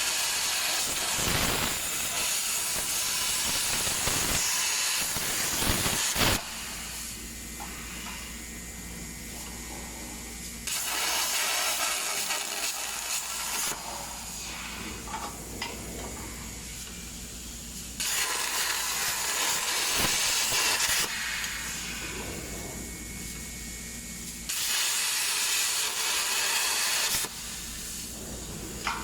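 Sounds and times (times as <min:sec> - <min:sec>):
plasma torch hissing: 0:00.0 - 0:29.0
machine hum: 0:14.0 - 0:17.8, 0:21.2 - 0:24.5, 0:27.6 - 0:29.0.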